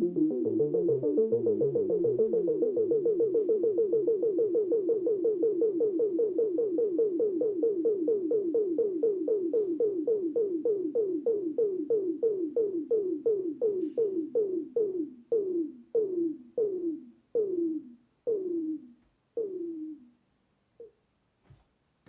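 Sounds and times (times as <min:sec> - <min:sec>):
synthesizer notes sliding down: 0:00.0 - 0:02.8.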